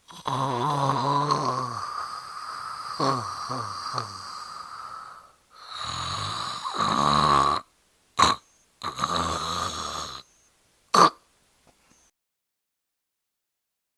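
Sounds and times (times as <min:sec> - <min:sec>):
person snoring: 0:00.0 - 0:10.3, 0:11.0 - 0:11.2.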